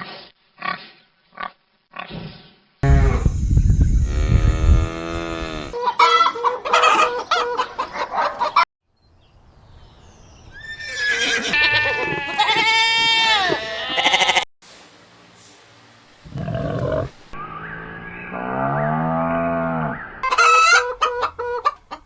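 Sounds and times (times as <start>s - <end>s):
heavy low rumble: 2.8s - 5.8s
chickens clucking and crowing: 5.7s - 8.6s, 20.2s - 22.0s
goat bleating: 10.9s - 14.5s.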